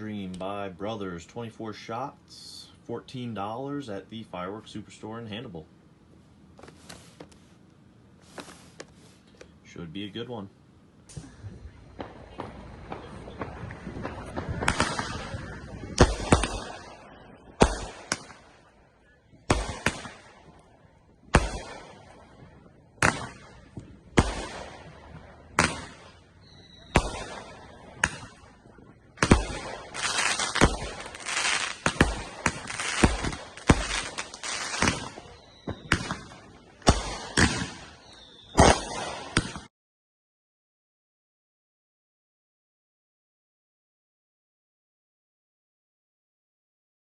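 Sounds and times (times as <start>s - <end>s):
firework crackling: 11.1s - 18.7s, 19.5s - 20.4s, 26.9s - 39.7s
firework cake bangs: 11.9s - 17.0s, 23.0s - 24.9s, 25.6s - 28.4s, 29.2s - 39.7s.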